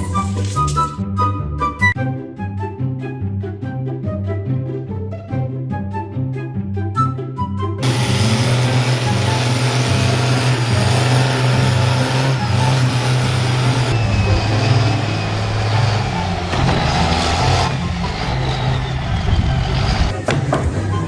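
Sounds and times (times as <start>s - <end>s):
heavy engine running loudly: 7.8s - 20.2s.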